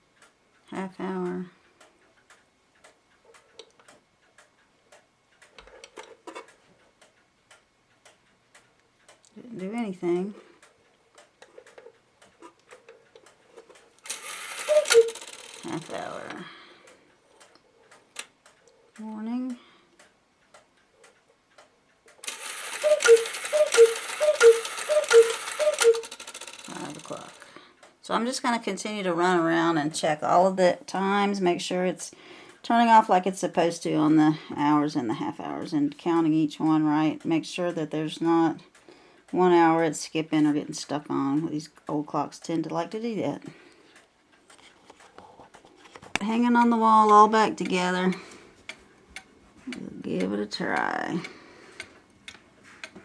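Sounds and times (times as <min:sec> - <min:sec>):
clock ticking: 0:00.0 - 0:31.4, 0:46.2 - 0:53.0
mechanical clicks and rattles: 0:12.6 - 0:16.1, 0:22.1 - 0:27.5
clock strike train whirring: 0:14.1 - 0:16.0, 0:22.2 - 0:27.4
two-note cuckoo call: 0:14.6 - 0:15.4, 0:22.3 - 0:27.3
sharp clock strike: 0:22.2 - 0:27.1.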